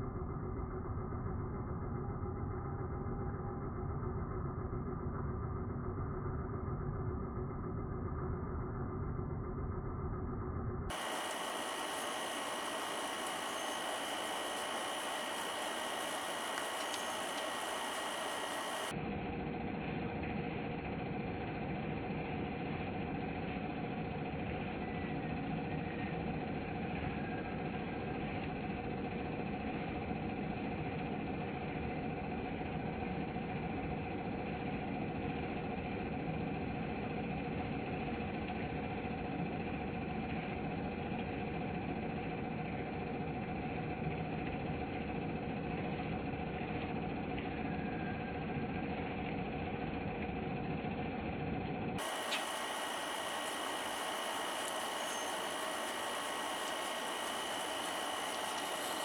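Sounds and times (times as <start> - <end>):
motor humming: 10.9 - 19.0, 52.0 - 59.0.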